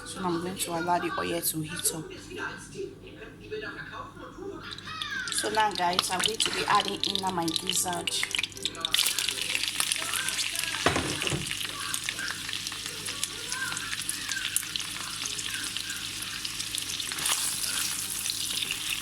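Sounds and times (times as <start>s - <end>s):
meat sizzling in a frying pan: 4.7s - 19.0s
knock against pan: 10.8s - 11.6s.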